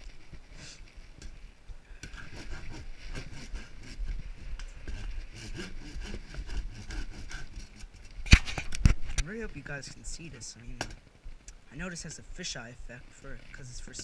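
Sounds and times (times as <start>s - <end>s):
rasp scraping wooden log: 2.0s - 8.2s.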